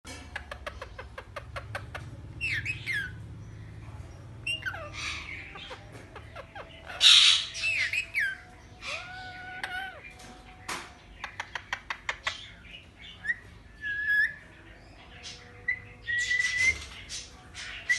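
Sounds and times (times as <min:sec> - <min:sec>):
parrot squawking: 0:00.4 - 0:03.2, 0:04.4 - 0:10.1.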